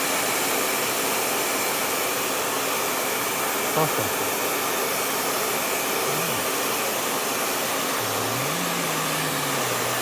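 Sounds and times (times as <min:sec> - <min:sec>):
hair dryer blowing: 0:00.0 - 0:10.0.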